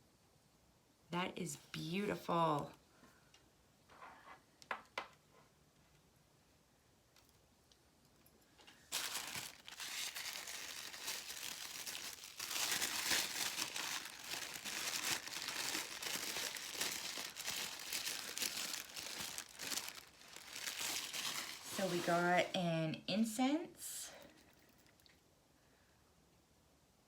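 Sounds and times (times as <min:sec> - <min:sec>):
packaging wrap crinkling: 0:08.6 - 0:22.5.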